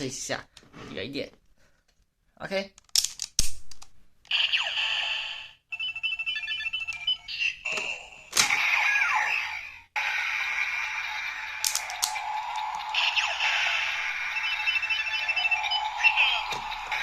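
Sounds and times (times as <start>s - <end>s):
electronic beeps: 5.8s - 7.6s, 13.0s - 17.0s
rhythmic electronic standby loop: 10.0s - 17.0s
toy chiming bursts: 12.2s - 17.0s.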